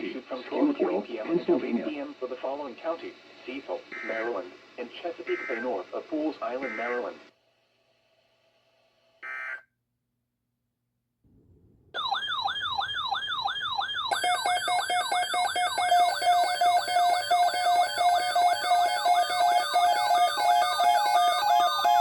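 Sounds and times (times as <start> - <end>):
falling yelp siren tone: 12.0 - 22.0
high-low alternating alert tones: 12.0 - 22.0.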